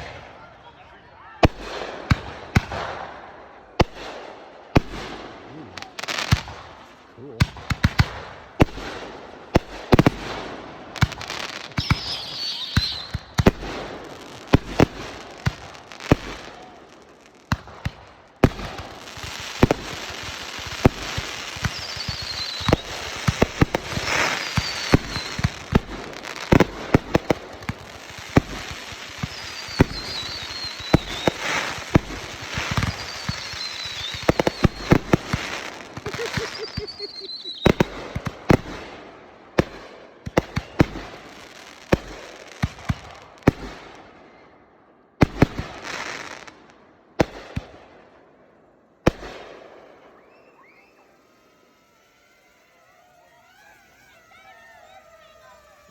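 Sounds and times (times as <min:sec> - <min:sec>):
fireworks bangs and crackling: 0:00.0 - 0:55.9
firework whistles dropping in pitch: 0:11.0 - 0:16.6, 0:18.7 - 0:38.3, 0:49.8 - 0:55.9.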